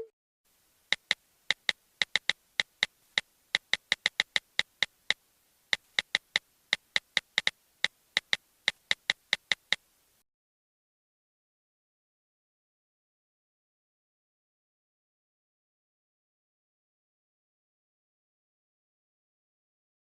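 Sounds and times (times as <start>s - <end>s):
phone keyboard typing clicks: 0.9s - 2.9s, 3.6s - 4.9s, 5.8s - 7.5s, 8.2s - 9.8s.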